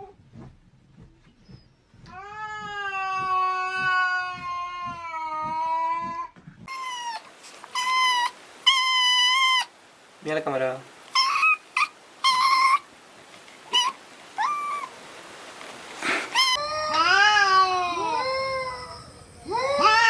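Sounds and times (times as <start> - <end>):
cat meowing: 2.1 - 7.2, 16.4 - 20.0.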